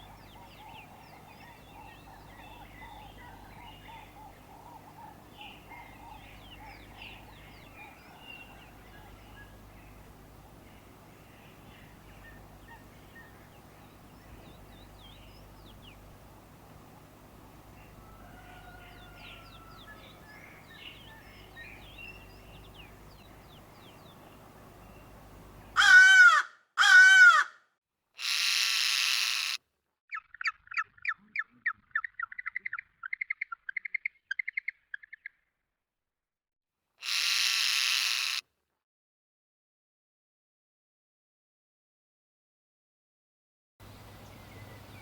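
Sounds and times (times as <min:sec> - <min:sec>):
low hum: 0:00.0 - 0:18.2, 0:18.8 - 0:25.8
faint birdsong chirping: 0:00.0 - 0:27.4, 0:28.2 - 0:35.6, 0:43.8 - 0:45.0
loud bird calls: 0:00.0 - 0:27.6, 0:28.2 - 0:35.2, 0:37.0 - 0:38.4
harsh rasping bird call: 0:25.7 - 0:27.6, 0:28.2 - 0:29.6, 0:37.0 - 0:38.4.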